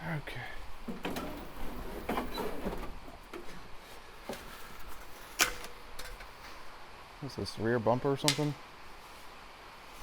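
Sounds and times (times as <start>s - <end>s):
car parts knocking and rattling: 0.8s - 6.4s.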